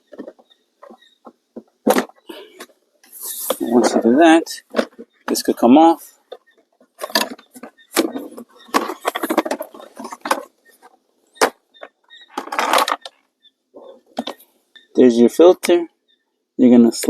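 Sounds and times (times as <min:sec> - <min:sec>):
plastic trim rubbing and scraping: 0:06.2 - 0:13.2.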